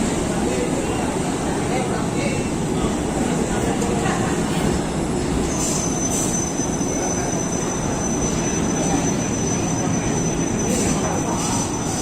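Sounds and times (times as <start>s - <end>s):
train rumbling on rails: 0.0s - 12.0s
high wheel squeal: 5.4s - 12.0s.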